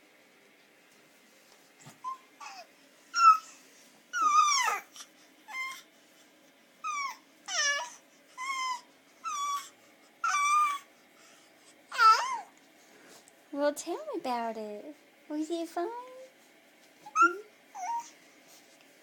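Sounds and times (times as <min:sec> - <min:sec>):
baby squealing: 0:03.2 - 0:03.5, 0:04.2 - 0:04.9, 0:06.9 - 0:10.8, 0:11.9 - 0:12.5, 0:17.1 - 0:18.1.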